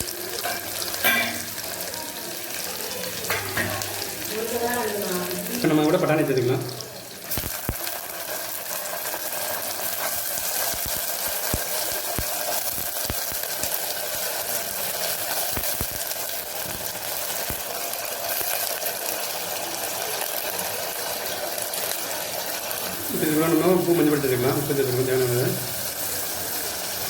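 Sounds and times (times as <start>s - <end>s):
peas sizzling in hot oil: 0.0s - 27.0s.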